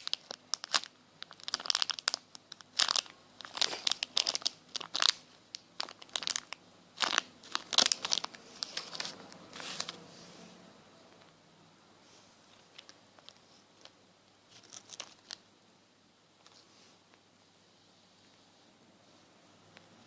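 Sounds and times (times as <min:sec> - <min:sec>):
foam squishies crinkling: 0:00.0 - 0:09.9, 0:14.5 - 0:15.4.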